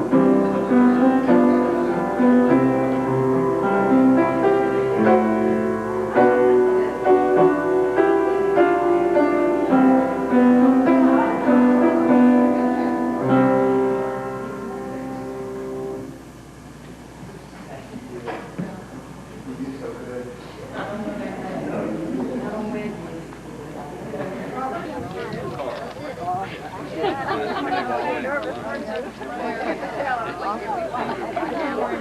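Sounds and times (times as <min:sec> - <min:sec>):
instrumental piano music: 0:00.0 - 0:16.4.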